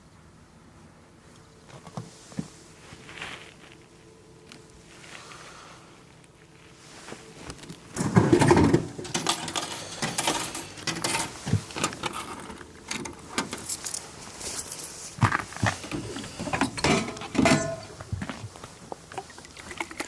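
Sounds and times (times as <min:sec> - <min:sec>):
handling knocks and metallic clinks: 0:07.5 - 0:18.6.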